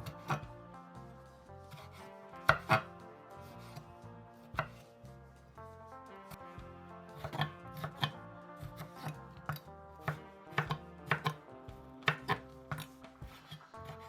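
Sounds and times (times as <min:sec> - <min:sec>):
knife chopping on cutting board: 0:00.0 - 0:00.5, 0:01.7 - 0:02.9, 0:04.6 - 0:04.9, 0:07.2 - 0:11.4, 0:12.0 - 0:14.0
soft background music: 0:00.0 - 0:14.0.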